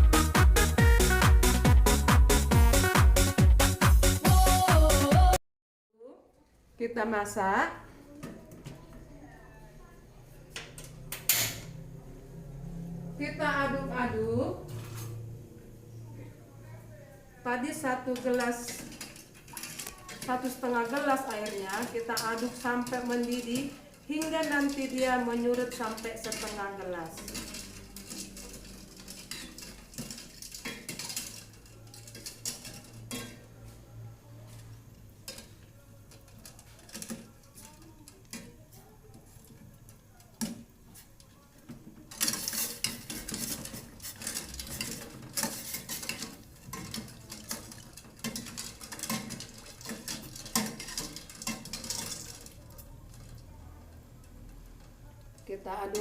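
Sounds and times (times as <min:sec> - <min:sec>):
spoon stirring in a pot: 0:17.5 - 0:56.0.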